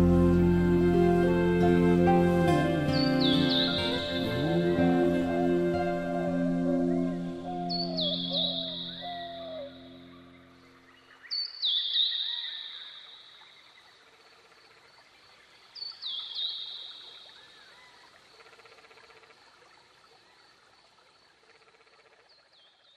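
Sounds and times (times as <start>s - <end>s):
songbird singing: 0.0s - 20.5s
soft calls of other birds: 2.4s - 12.7s.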